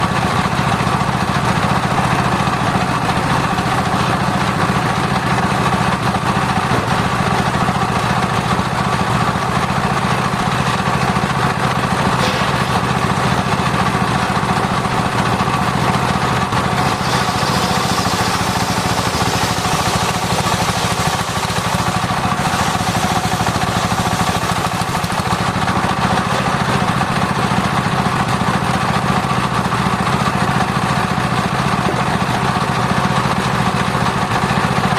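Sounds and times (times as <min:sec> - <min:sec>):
circular saw sawing timber: 0:11.7 - 0:27.6.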